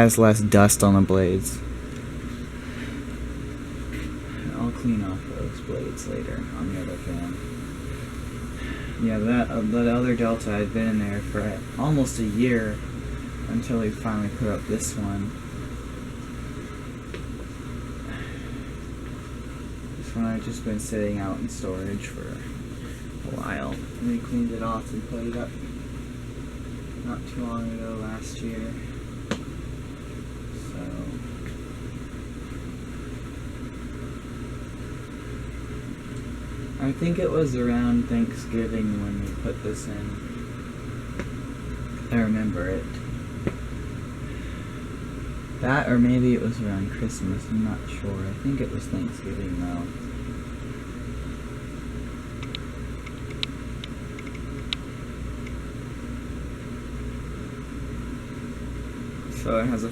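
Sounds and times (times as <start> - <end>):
ceiling fan humming: 0.0 - 59.9
sharp click: 52.4 - 54.8.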